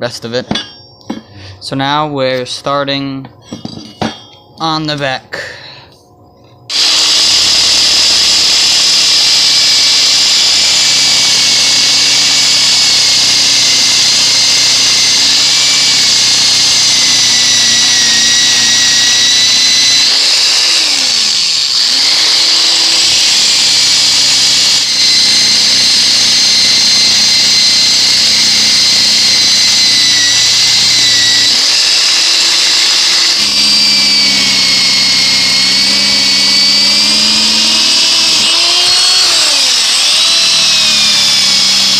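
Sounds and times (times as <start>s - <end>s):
drill wire brush scouring steel: 6.7s - 41.9s.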